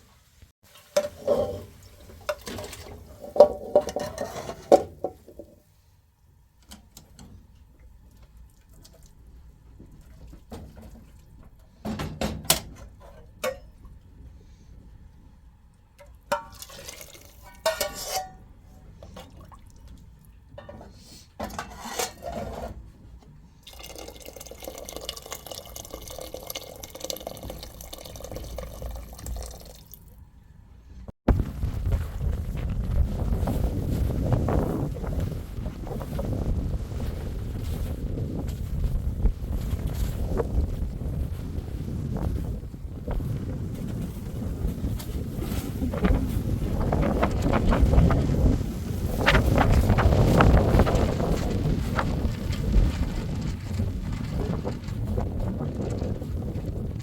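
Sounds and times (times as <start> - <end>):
dishes and cutlery clinking: 1.0 - 5.6, 17.5 - 18.4
liquid pouring: 16.5 - 17.6, 23.6 - 30.1.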